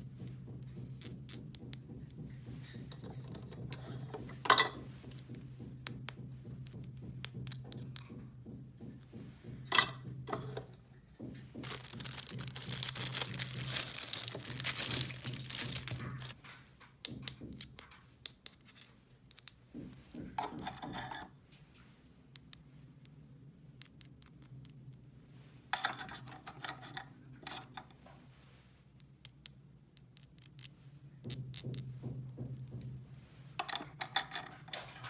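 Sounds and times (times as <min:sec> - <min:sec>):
packaging crinkling: 0:11.6 - 0:16.4.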